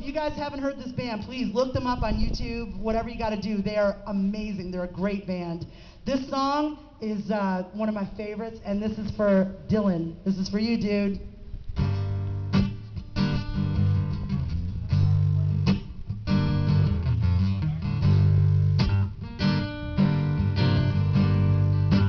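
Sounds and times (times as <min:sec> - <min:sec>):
acoustic guitar strumming chords: 0:11.8 - 0:22.0.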